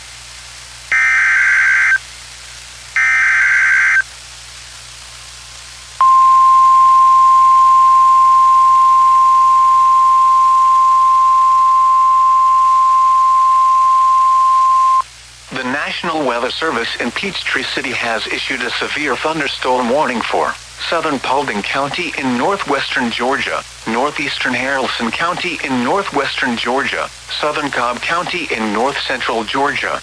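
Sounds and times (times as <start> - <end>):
loud steady warning tone: 0.9 - 2.0, 3.0 - 4.1, 6.0 - 15.1
digital header screech: 3.0 - 4.0.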